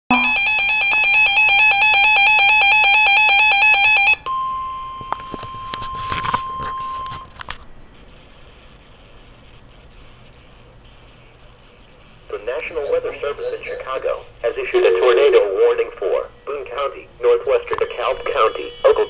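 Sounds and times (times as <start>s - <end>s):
fast-pulsing electronic alert tone: 0.1s - 0.6s
steady electronic tone: 0.1s - 0.9s
crackles: 5.2s - 14.8s, 15.7s - 19.0s.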